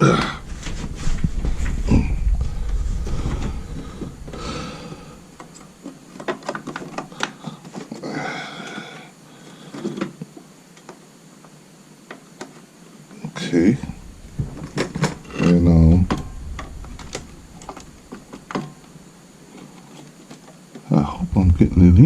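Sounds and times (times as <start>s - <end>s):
handling scrapes: 0.0s - 5.8s
low handling rumble: 0.0s - 5.8s, 13.5s - 19.2s.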